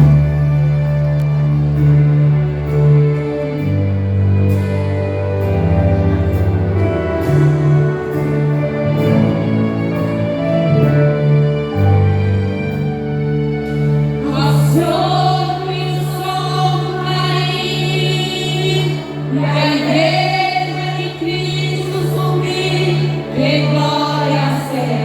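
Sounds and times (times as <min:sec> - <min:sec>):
instrumental accompaniment with bass: 0:00.0 - 0:25.0
women's choir singing: 0:14.2 - 0:25.0.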